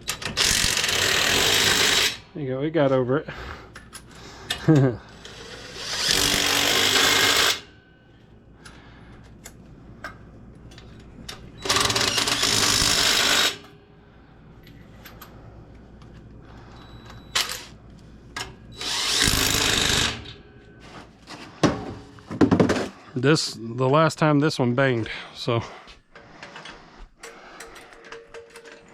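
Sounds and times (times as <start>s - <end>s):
pneumatic tool running: 0.0s - 2.2s, 5.2s - 7.7s, 11.6s - 13.7s, 18.7s - 20.4s.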